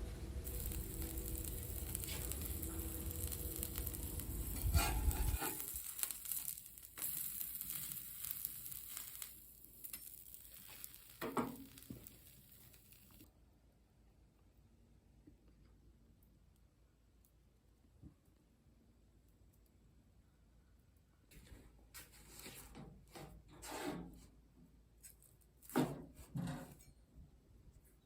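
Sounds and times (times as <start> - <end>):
food sizzling on a griddle: 0.1 - 13.3.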